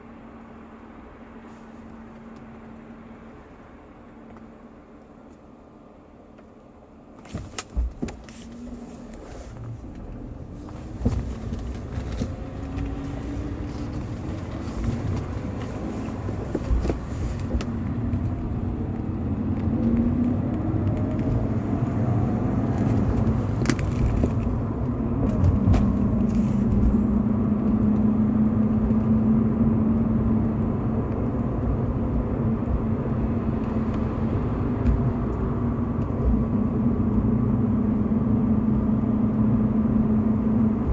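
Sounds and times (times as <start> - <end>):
car engine revving: 8.3 - 40.9.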